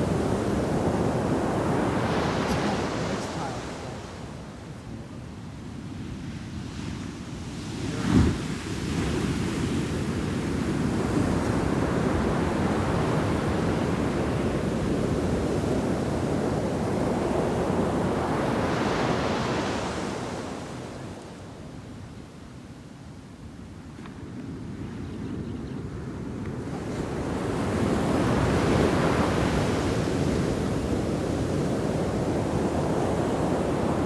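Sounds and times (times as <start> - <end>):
whitewater rushing up sand: 0.0 - 5.2
wave slamming onto beach: 2.0 - 4.0.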